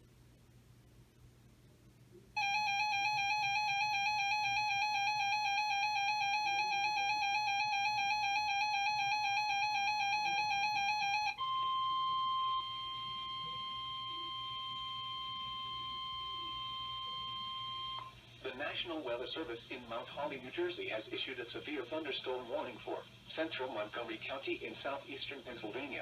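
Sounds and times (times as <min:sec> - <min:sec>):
emergency alert attention tone: 0:02.4 - 0:18.1
high steady alarm tone: 0:02.4 - 0:18.2.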